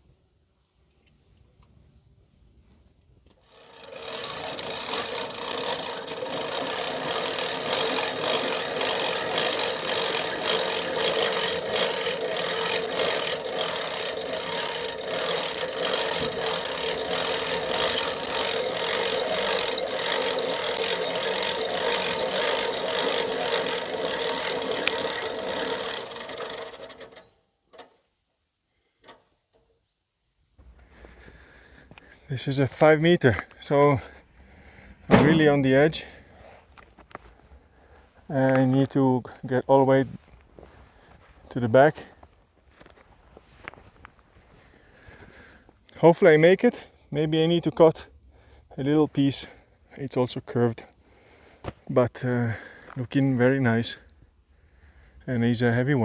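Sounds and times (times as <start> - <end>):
engine hum: 3.5 - 27.2, 34.2 - 36.2
bandsaw cutting log: 3.5 - 27.3, 35.1 - 36.0.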